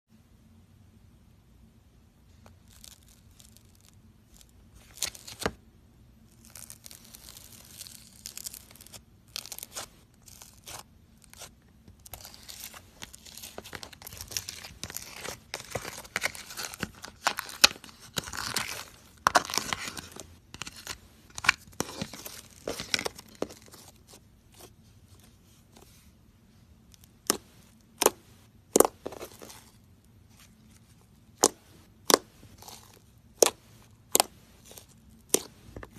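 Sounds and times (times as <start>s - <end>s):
sticky crackling and popping: 27.2s - 29.8s, 31.3s - 35.9s.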